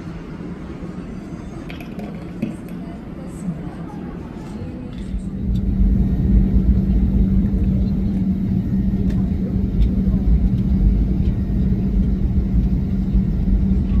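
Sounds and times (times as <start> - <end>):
airliner rumble: 0.0 - 14.0
constant hum: 0.0 - 14.0.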